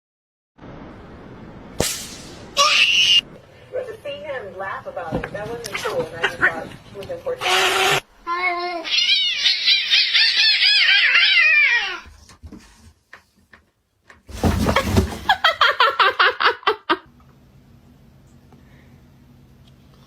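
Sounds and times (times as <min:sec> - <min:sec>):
cats crying in a fight: 0:08.6 - 0:12.1
loud scuffling: 0:14.2 - 0:15.5.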